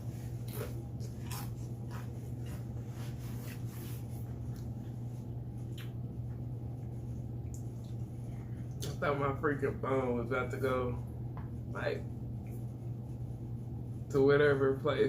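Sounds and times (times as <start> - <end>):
steady low hum: 0.0 - 15.0
person chewing food: 0.3 - 2.8.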